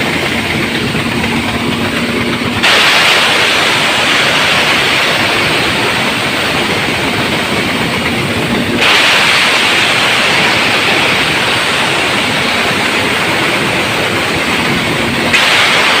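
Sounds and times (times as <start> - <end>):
wood chipper running: 0.0 - 16.0.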